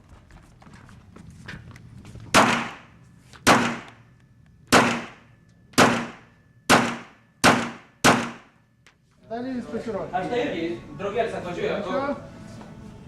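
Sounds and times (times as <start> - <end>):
handgun shots echoing: 2.4 - 2.9, 3.5 - 4.0, 4.7 - 5.2, 5.8 - 8.5.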